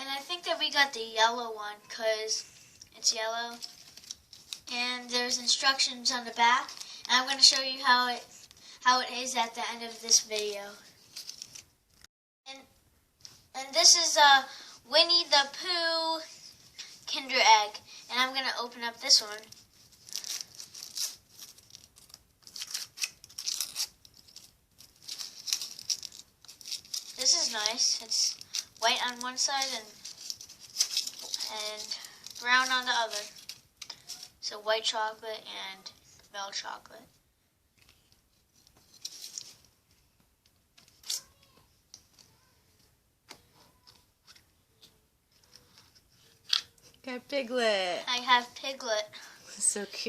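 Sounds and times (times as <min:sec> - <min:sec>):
faint rustling: 0:02.4 - 0:12.1, 0:14.9 - 0:34.4
foil wrapper crinkling: 0:03.5 - 0:07.8, 0:09.9 - 0:11.7, 0:19.2 - 0:34.4, 0:38.5 - 0:39.7.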